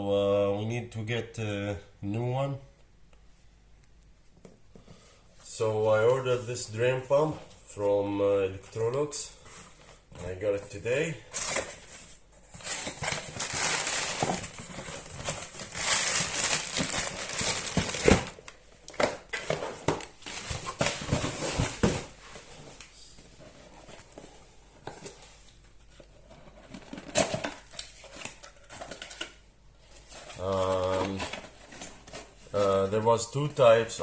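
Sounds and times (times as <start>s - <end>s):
packaging rustling and crinkling: 9.4s - 33.8s.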